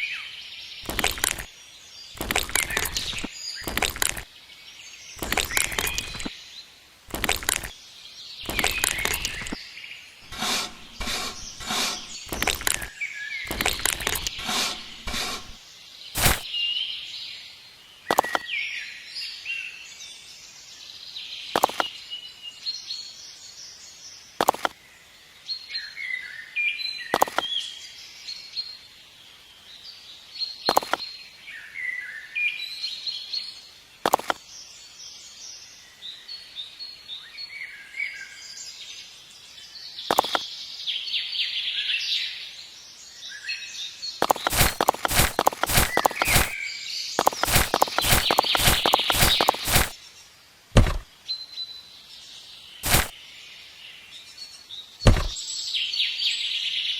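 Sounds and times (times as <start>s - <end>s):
small birds chirping: 0.0s - 19.4s, 32.6s - 56.9s
sharp click or knock: 50.8s - 51.1s, 55.1s - 55.4s.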